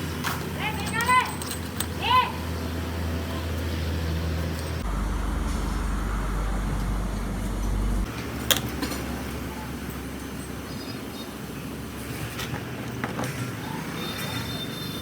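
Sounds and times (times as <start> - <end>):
factory machinery humming: 0.0 - 12.0.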